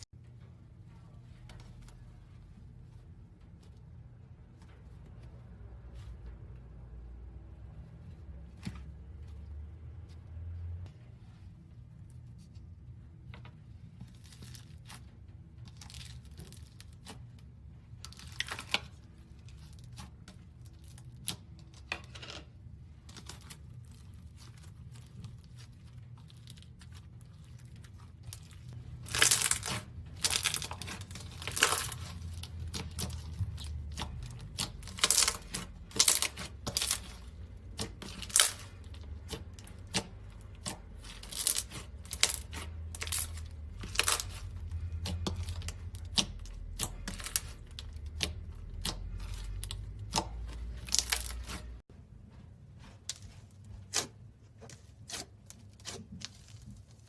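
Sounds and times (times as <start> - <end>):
slime crackling and popping: 23.0 - 51.8.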